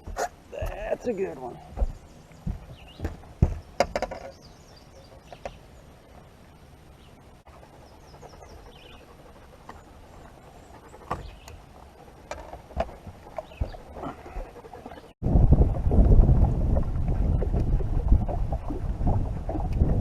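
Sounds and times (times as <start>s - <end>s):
sharp knocks and thumps: 1.7s - 4.5s, 11.0s - 14.6s.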